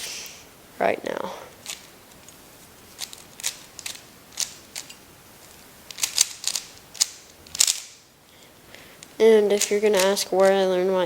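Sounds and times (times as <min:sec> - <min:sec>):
plastic puzzle cube clacking: 0:09.6 - 0:10.6.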